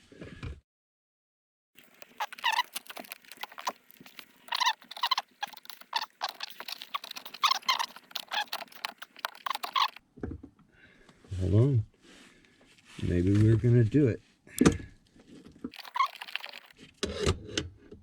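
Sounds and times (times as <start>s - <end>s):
metal on metal squeaks: 1.9s - 10.0s, 15.8s - 16.8s.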